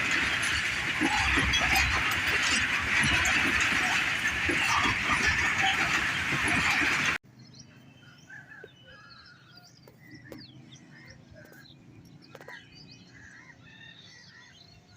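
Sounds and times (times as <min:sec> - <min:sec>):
train rumbling and rattling: 0:00.0 - 0:07.2.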